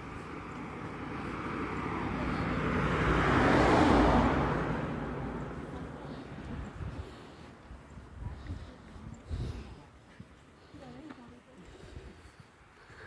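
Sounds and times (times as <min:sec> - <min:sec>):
car driving past: 0:00.0 - 0:07.0.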